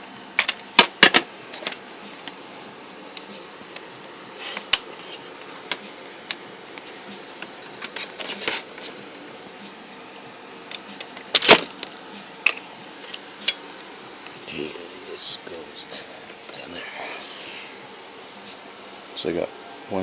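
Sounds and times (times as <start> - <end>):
clicks and knocks of parts handled: 0.4 - 2.4.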